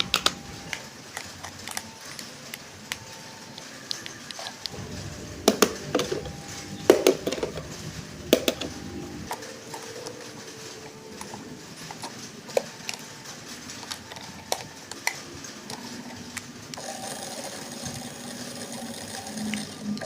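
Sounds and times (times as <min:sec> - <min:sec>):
toy car electric motor whine: 0:16.8 - 0:20.0.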